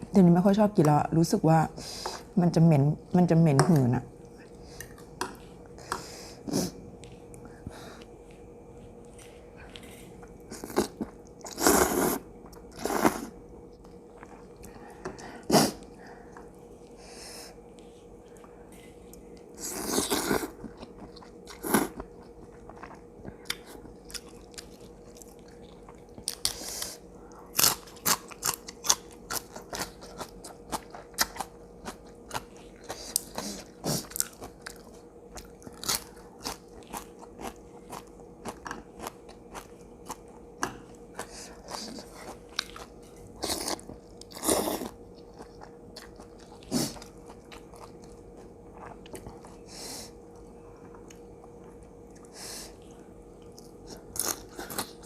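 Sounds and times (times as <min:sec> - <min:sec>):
person chewing crunchy food: 0:04.2 - 0:55.0.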